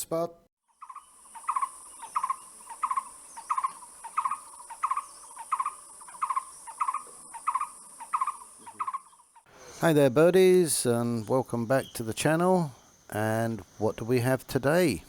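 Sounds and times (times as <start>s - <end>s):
steady high hiss: 9.5s - 15.0s.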